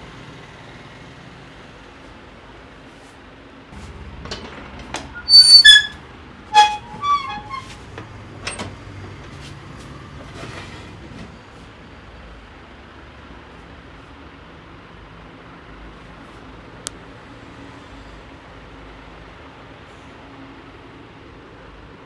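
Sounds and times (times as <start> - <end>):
high-pitched squeaks and chirps: 5.2 - 6.0.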